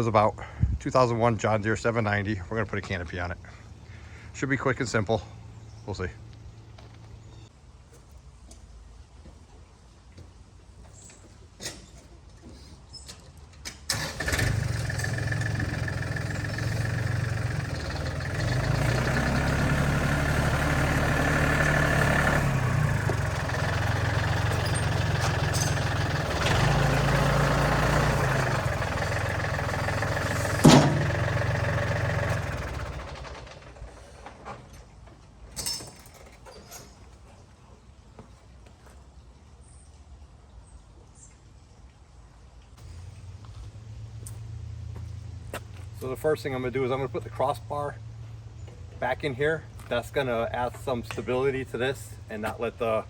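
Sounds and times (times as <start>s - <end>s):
small diesel engine running: 13.9s - 34.7s.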